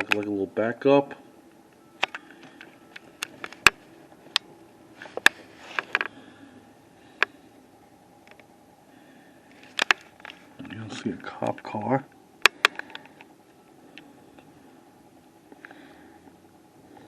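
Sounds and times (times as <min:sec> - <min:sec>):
device handling clicks: 0:00.0 - 0:00.3, 0:01.7 - 0:04.5, 0:05.1 - 0:06.2, 0:08.2 - 0:08.5, 0:09.5 - 0:10.4, 0:12.4 - 0:13.3
faint steady hum: 0:00.0 - 0:17.0.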